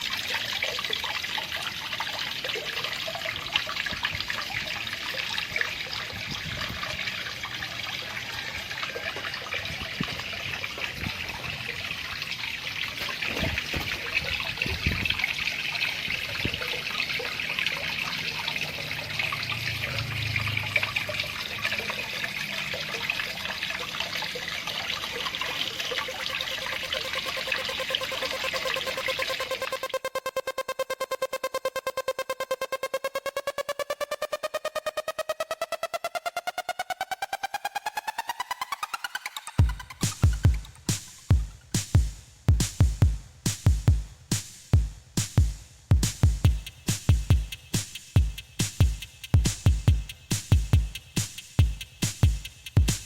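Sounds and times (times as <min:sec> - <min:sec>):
water trickling and splashing: 0:00.0 - 0:30.2, 0:33.2 - 0:42.2.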